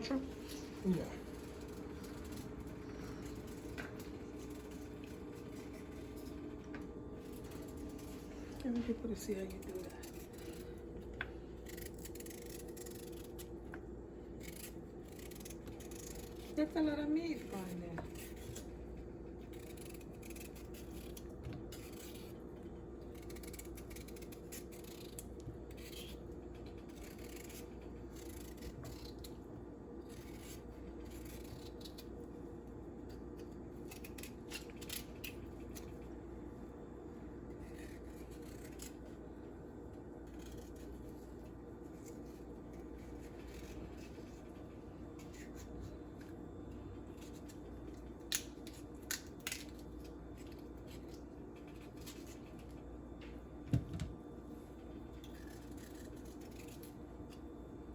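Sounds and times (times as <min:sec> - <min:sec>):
knife scraping and cutting vegetables: 0:00.0 - 0:13.8, 0:23.0 - 0:29.4, 0:37.5 - 0:39.2, 0:40.2 - 0:46.4
steady low hum: 0:00.0 - 0:57.9.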